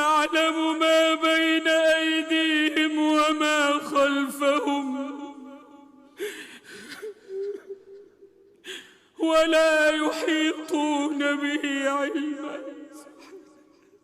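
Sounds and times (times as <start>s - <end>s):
man reciting melodically: 0.0s - 14.0s
breathy sounds: 6.2s - 9.1s.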